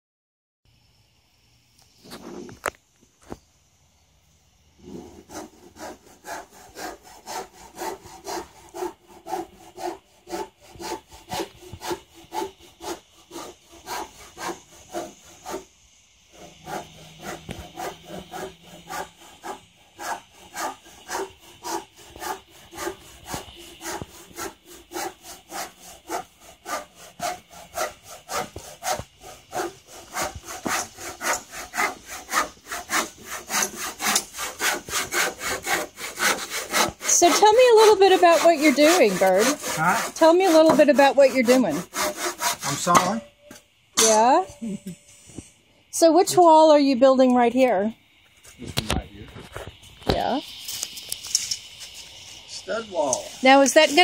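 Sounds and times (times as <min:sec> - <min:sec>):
hand saw cutting wood: 0:04.8 - 0:15.7, 0:16.3 - 0:43.3, 0:53.0 - 0:54.0.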